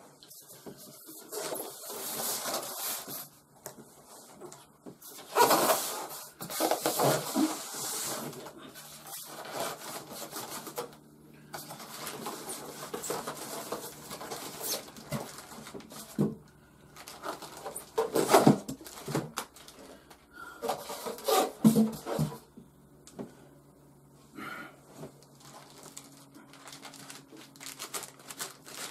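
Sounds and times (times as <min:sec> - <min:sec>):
cardboard rustling and tearing: 0:01.1 - 0:03.3, 0:05.0 - 0:11.0, 0:11.6 - 0:16.3, 0:17.0 - 0:22.4, 0:25.2 - 0:28.9.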